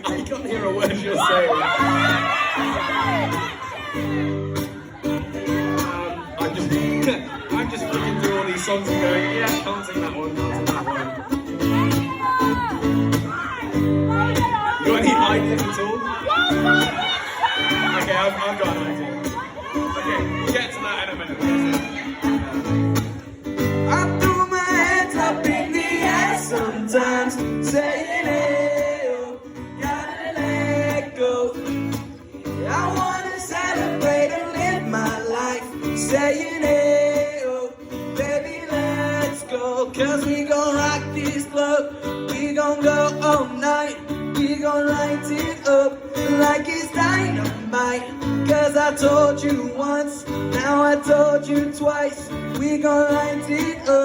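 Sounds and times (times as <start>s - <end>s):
acoustic guitar strumming: 0.0s - 54.0s
person singing: 23.9s - 54.0s.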